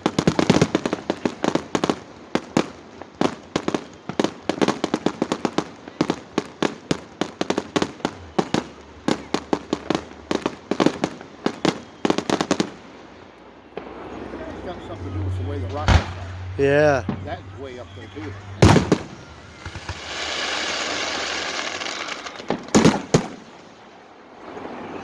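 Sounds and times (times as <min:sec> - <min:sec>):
fireworks bangs and pops: 0:00.0 - 0:25.0.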